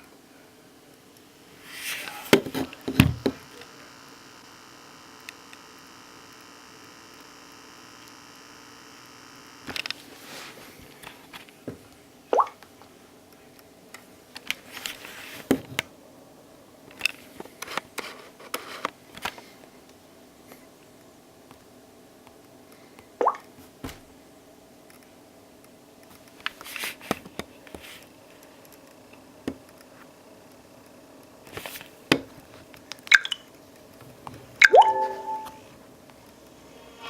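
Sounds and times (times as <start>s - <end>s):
faint multi-tone buzz: 0.0s - 10.9s.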